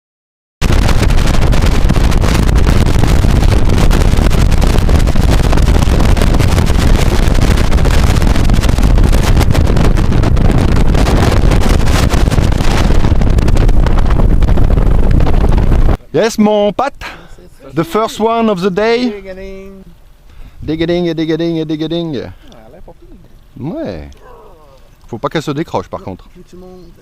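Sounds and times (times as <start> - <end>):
wind rumble on microphone: 0.6 - 16.1, 19.0 - 22.0.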